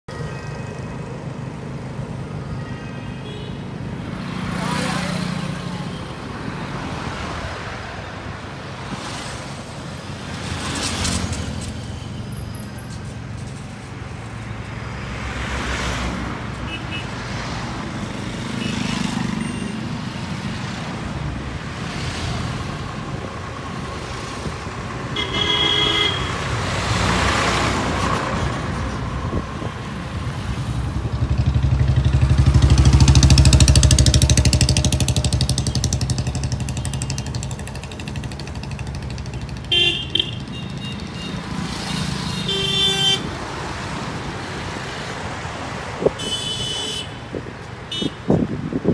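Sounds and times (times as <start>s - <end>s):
combine harvesters passing: 3.8s - 48.9s.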